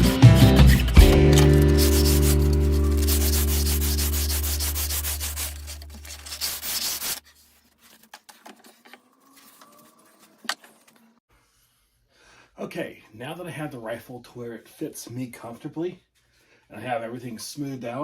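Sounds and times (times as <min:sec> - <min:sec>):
sandpaper rubbing on wood: 0:00.0 - 0:08.0.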